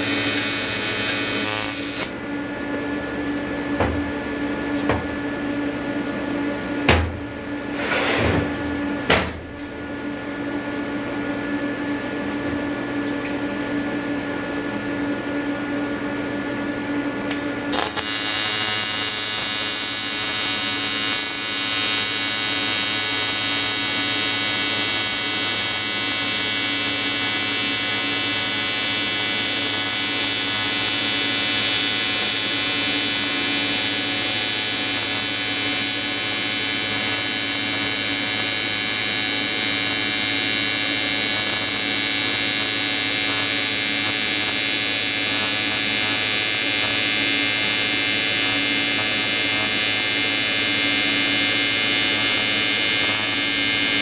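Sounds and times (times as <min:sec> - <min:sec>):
welding arc buzzing: 0:00.0 - 0:02.2, 0:12.8 - 0:13.8, 0:17.3 - 0:54.0.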